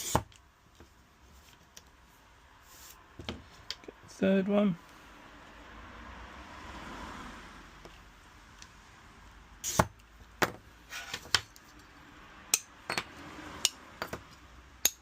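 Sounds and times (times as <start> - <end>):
glass cutter scoring glass: 9.6 - 10.0.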